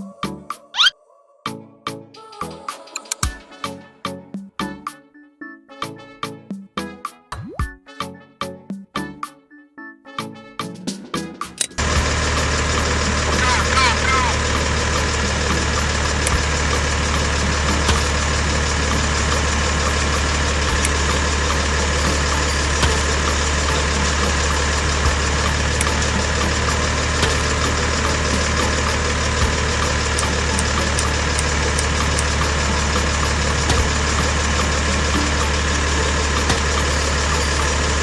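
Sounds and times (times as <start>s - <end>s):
small motor humming: 11.8s - 38.0s.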